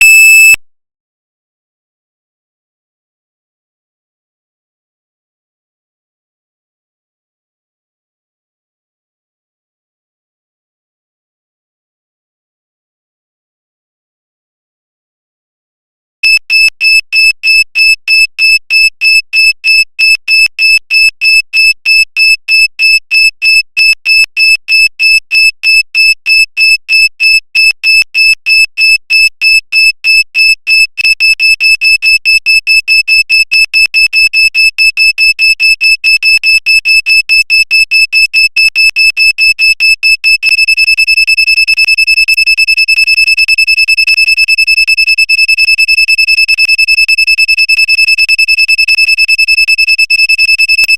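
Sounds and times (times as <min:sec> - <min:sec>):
parking sensor beeping: 0:00.0 - 0:00.6.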